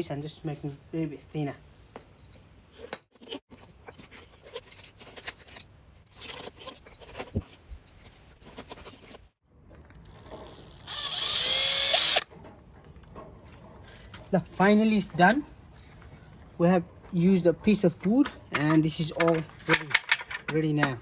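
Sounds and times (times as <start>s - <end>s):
small power tool whining: 10.0s - 12.3s.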